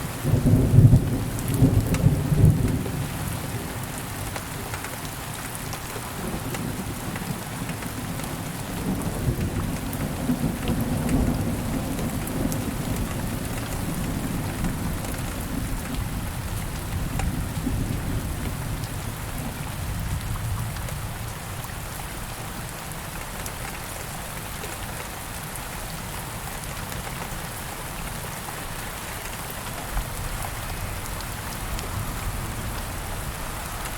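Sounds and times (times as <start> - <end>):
steady rain falling: 0.0 - 33.9
low rolling thunder: 0.2 - 3.6, 8.7 - 21.3.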